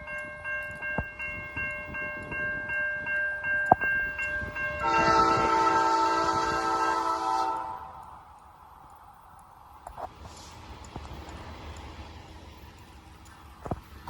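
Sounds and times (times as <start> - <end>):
railroad crossing bell ringing: 0.0 - 8.3
locomotive air horn: 4.8 - 8.0.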